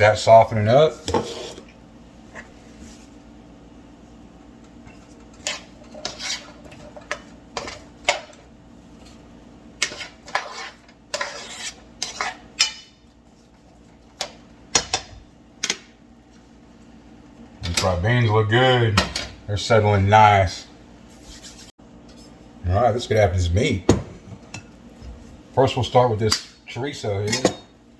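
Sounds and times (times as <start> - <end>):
utensil scraping frying pan: 1.0 - 1.7, 4.9 - 8.4, 9.8 - 13.4.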